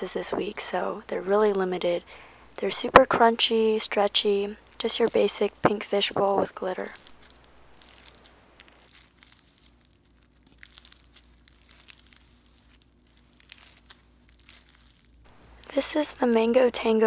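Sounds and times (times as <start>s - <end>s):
slime crunching and crackling: 3.1s - 17.0s.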